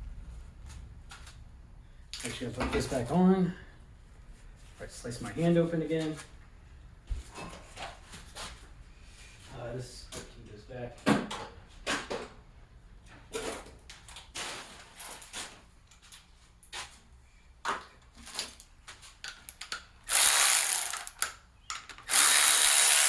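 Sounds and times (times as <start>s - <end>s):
power ratchet whirring: 20.1s - 21.2s, 22.0s - 23.0s.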